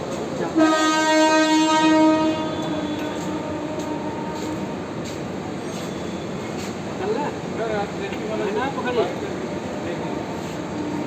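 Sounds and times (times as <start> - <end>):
horn blast: 0.6 - 4.6.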